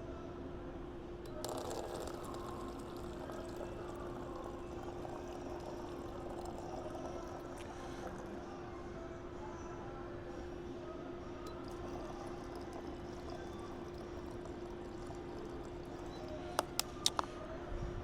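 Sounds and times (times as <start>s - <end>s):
water filling a container: 1.3s - 8.4s, 11.5s - 17.2s.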